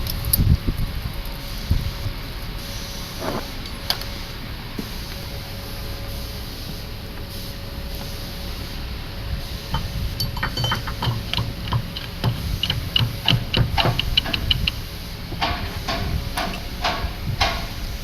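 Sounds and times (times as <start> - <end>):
low workshop hum: 0.0 - 18.0
tools clicking on steel parts: 9.7 - 17.8.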